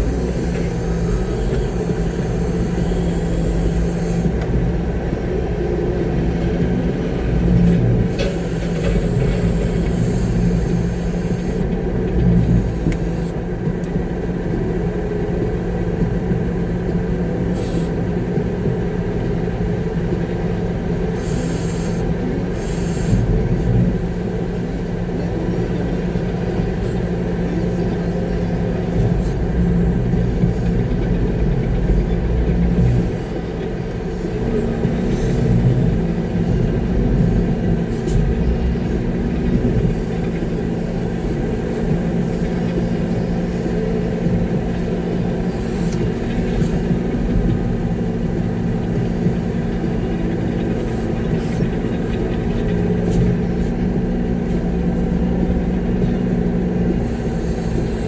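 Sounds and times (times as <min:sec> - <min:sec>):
truck engine rumbling: 0:00.0 - 0:58.0.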